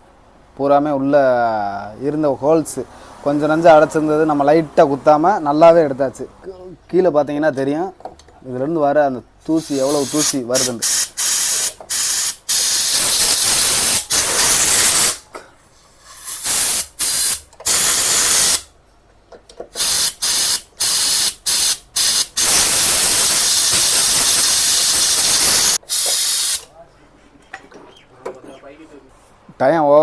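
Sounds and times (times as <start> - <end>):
compressed air hissing bursts: 9.5 - 18.7, 19.8 - 26.7.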